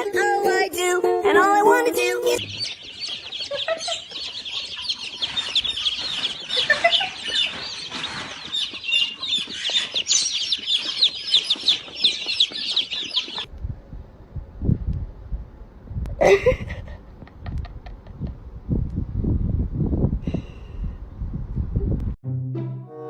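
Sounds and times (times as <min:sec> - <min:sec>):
chicks peeping: 0:01.6 - 0:13.5
low rumble: 0:13.5 - 0:16.2.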